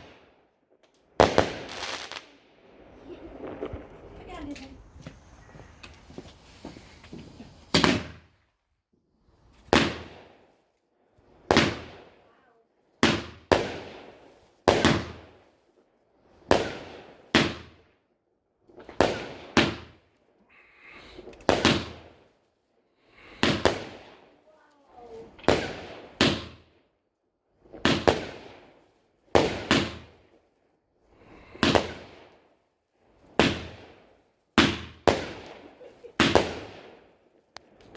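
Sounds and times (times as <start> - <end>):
fireworks hiss: 1.2 - 8.2
fireworks bangs: 1.2 - 8.4, 9.6 - 10.4, 11.5 - 12.1, 16.5 - 17.7, 18.8 - 20.0, 21.1 - 22.2, 23.2 - 26.6, 27.7 - 28.6, 29.4 - 30.2, 31.5 - 32.3, 33.4 - 34.0, 34.6 - 37.1.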